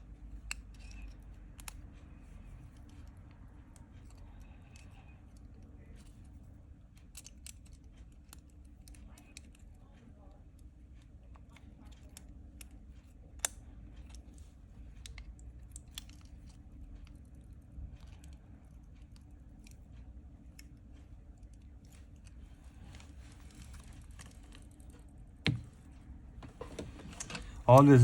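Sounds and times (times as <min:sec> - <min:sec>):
steady low hum: 0:00.0 - 0:28.0
small tools clicking and tapping: 0:00.4 - 0:01.8, 0:07.0 - 0:09.7.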